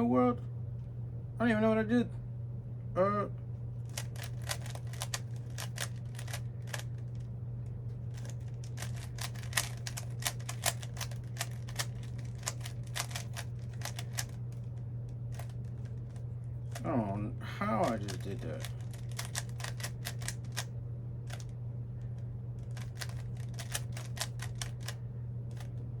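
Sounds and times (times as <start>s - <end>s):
steady low hum: 0.0s - 26.0s
puzzle cube clicking: 3.9s - 7.2s, 8.1s - 14.6s, 15.3s - 15.6s, 17.8s - 20.7s, 21.3s - 21.5s, 22.6s - 25.7s.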